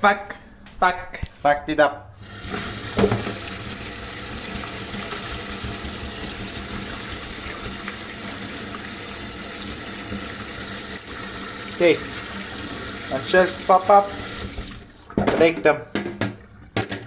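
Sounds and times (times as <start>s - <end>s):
water running from a tap: 2.2s - 15.2s.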